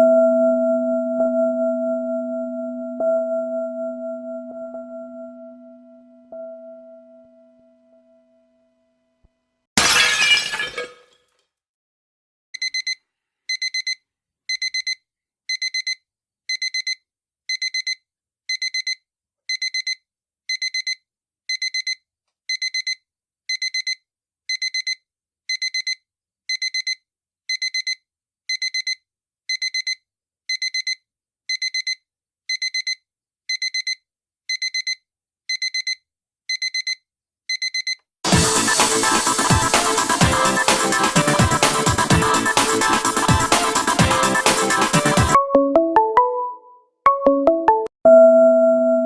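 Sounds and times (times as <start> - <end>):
alarm clock high beeps: 12.6 - 38.0.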